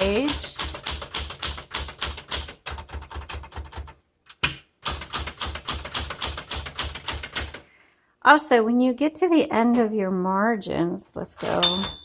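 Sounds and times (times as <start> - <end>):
typewriter keys striking: 0.0 - 7.6.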